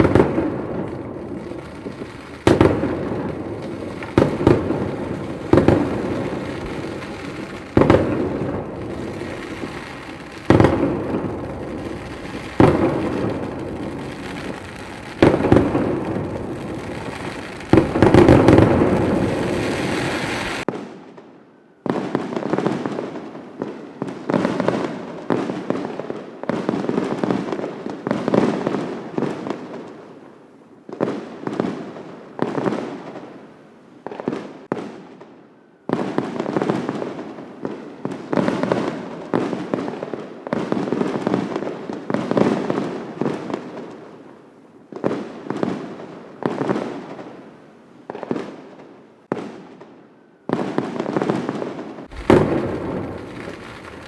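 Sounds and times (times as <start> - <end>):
fireworks crackling: 0.0 - 21.3, 50.5 - 54.0
fireworks bangs: 0.0 - 30.0, 50.5 - 54.0.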